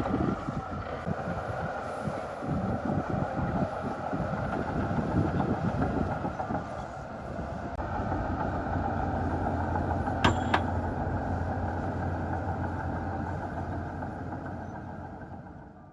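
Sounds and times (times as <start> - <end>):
diesel machinery running: 0.0 - 15.9
sharp metallic clanks: 10.2 - 10.8.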